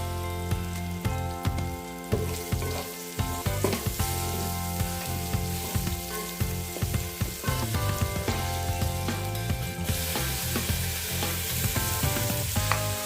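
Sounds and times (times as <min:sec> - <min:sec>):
food sizzling in a pot: 0:00.0 - 0:13.0.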